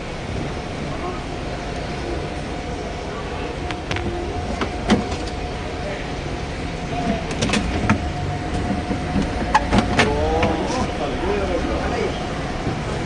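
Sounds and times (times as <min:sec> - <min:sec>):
steady hum: 0:00.0 - 0:13.0
sharp clicks and knocks: 0:07.1 - 0:10.6.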